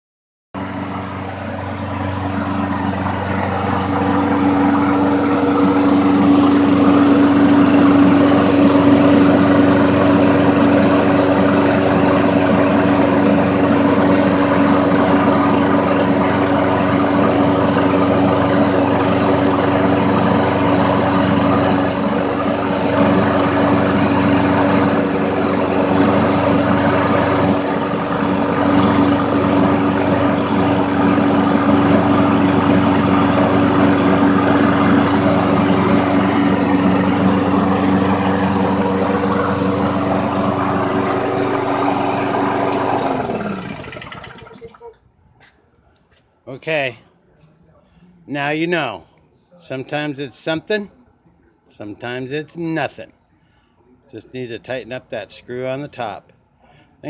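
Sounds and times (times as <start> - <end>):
lawn mower engine running: 0.6 - 44.6
thin high squeal: 15.6 - 17.3, 21.7 - 23.0, 27.5 - 31.8.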